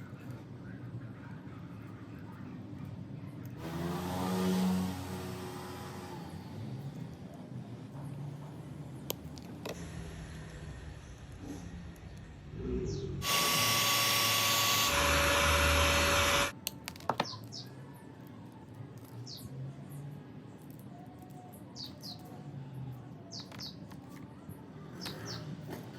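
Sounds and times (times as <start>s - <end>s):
small birds chirping: 17.2s - 17.8s, 19.0s - 20.0s, 20.9s - 22.5s, 23.3s - 24.2s, 24.9s - 25.6s.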